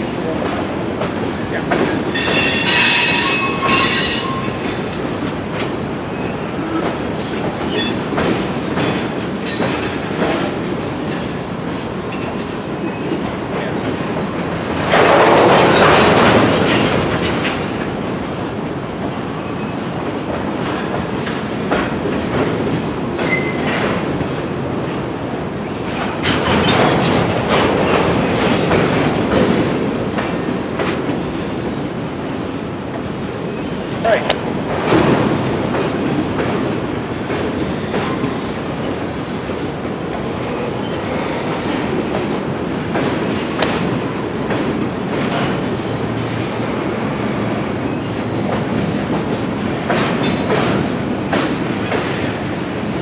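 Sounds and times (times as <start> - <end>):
wheels clicking over rail joints: 19.0 - 46.4
freight cars rolling: 19.0 - 53.0.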